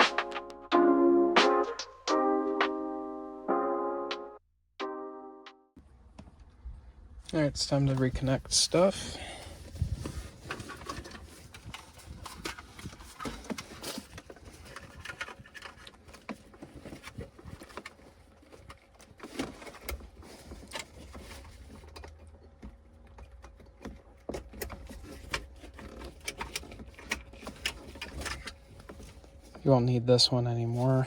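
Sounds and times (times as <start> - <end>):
plastic connectors clicking and rustling: 10.4 - 29.4.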